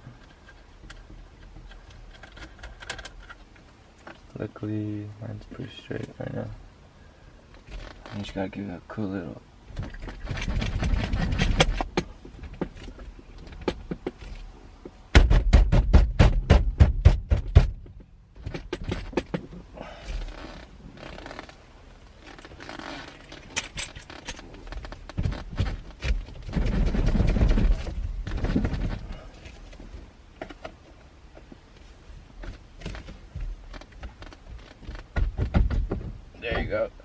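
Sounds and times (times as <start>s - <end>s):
metal parts and tools rattling: 0.0s - 4.4s, 22.2s - 29.9s
rapid clicking and knocking: 9.7s - 14.4s, 15.1s - 19.6s, 23.3s - 29.0s, 32.8s - 36.2s.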